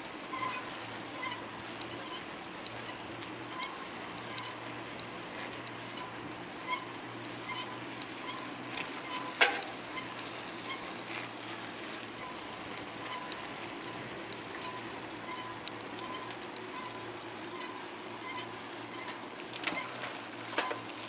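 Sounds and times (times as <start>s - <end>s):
bicycle clicks and rattles: 0.0s - 21.0s
bicycle tyre and wind noise: 0.0s - 21.0s.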